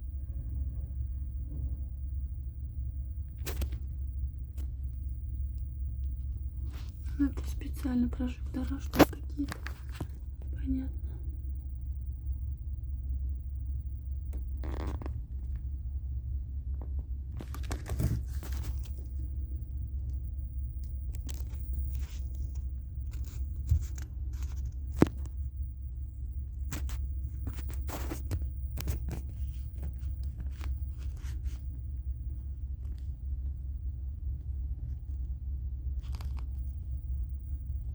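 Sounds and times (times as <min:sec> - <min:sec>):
ship low rumble: 0:00.0 - 0:37.9
phone being handled: 0:03.3 - 0:04.0, 0:08.7 - 0:10.4, 0:17.4 - 0:19.4, 0:20.8 - 0:25.4, 0:26.6 - 0:31.8, 0:36.0 - 0:36.9.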